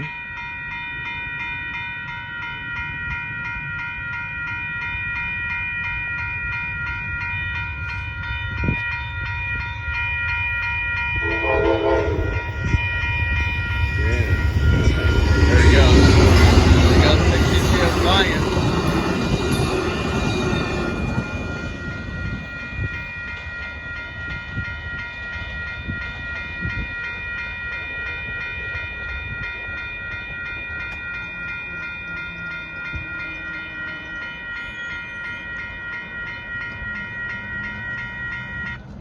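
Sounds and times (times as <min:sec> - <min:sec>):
railroad crossing bell ringing: 0:00.0 - 0:39.0
passenger train rumbling past: 0:02.6 - 0:39.0.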